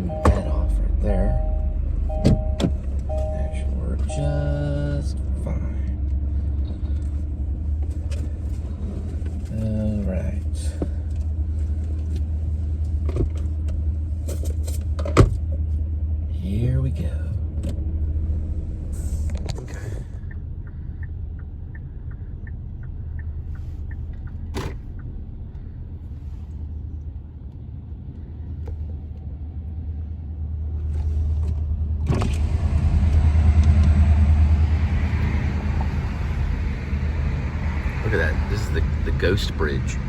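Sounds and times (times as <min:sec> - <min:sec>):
car engine and road rumble: 0:00.0 - 0:40.0
light even ticking: 0:19.4 - 0:25.9.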